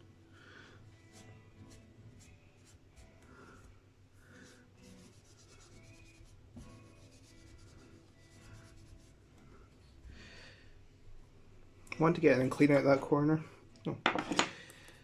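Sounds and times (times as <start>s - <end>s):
rubbing on guitar finish: 4.3s - 9.2s.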